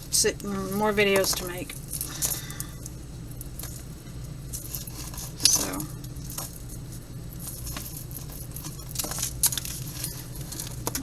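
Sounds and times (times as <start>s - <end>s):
jewelry chains and beads clicking: 0.0s - 11.0s.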